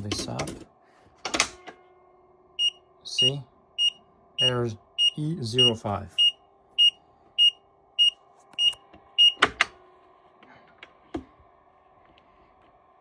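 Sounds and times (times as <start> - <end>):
short high alarm beeps: 2.6 - 9.4.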